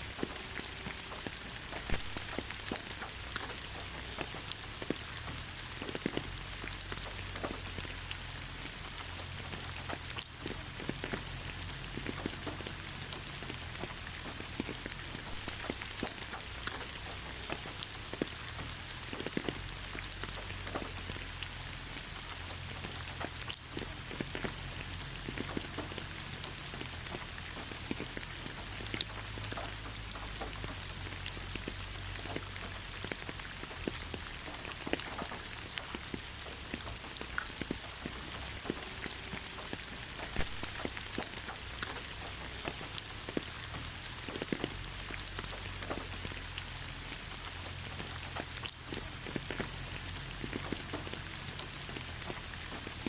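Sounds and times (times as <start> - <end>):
raindrops ticking on a surface: 0.0 - 53.0
steady rainfall: 0.0 - 53.0.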